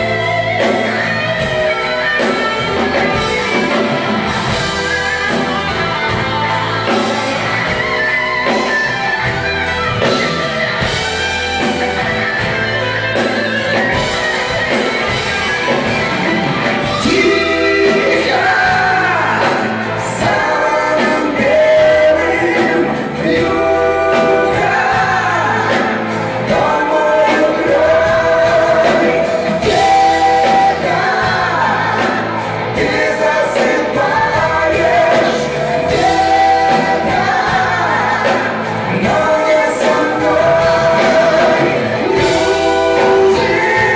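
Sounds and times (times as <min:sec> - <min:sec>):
live rock band playing: 0:00.0 - 0:43.9
person singing: 0:13.7 - 0:43.9.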